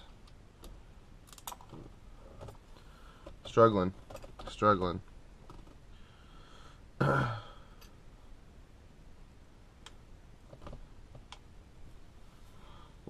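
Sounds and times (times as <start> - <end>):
man sighing with effort: 6.4 - 7.8.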